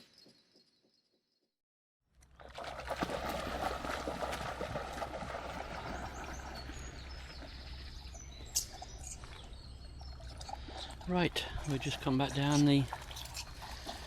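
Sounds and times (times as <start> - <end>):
river water flowing: 2.3 - 14.0
bird chirps: 5.7 - 11.0.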